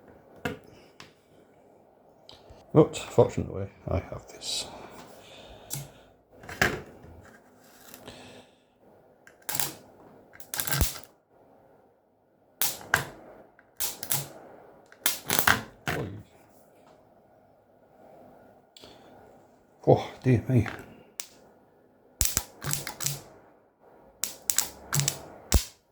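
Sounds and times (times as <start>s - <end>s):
electrical snaps and pops: 9.3s - 9.8s, 10.4s - 11.1s, 12.6s - 16.2s, 20.6s - 21.4s, 22.2s - 23.3s, 24.2s - 25.9s.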